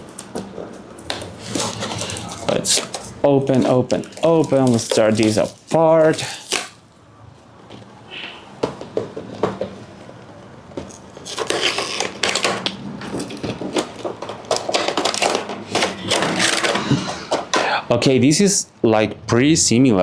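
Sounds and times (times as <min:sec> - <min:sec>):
packaging clicks and knocks: 0:00.0 - 0:06.8, 0:08.6 - 0:17.8
packaging rustling and tearing: 0:00.0 - 0:06.8, 0:10.8 - 0:17.8.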